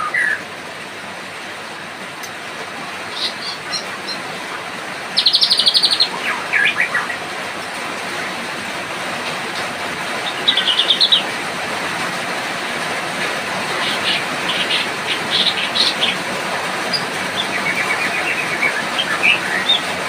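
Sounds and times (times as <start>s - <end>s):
rain hiss: 0.0s - 20.0s
bird singing: 5.2s - 7.2s, 10.2s - 11.3s, 13.8s - 16.2s, 16.9s - 20.0s.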